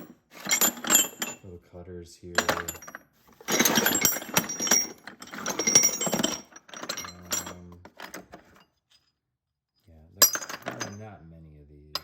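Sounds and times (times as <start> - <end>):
metal cutters clinking: 2.4 - 8.6, 10.2 - 11.0.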